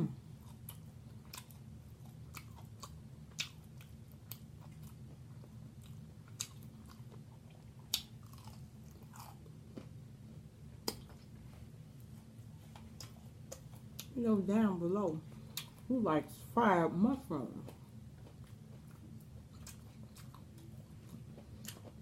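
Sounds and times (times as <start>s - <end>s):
steady low hum: 0.0s - 22.0s
wet chewing: 0.4s - 10.0s, 12.0s - 14.2s, 15.4s - 15.9s, 17.7s - 22.0s.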